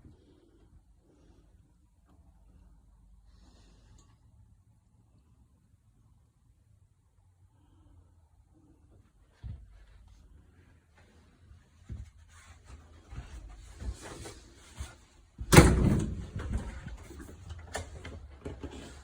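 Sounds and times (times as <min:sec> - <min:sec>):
knocks and rustles of movement: 0:09.2 - 0:19.0.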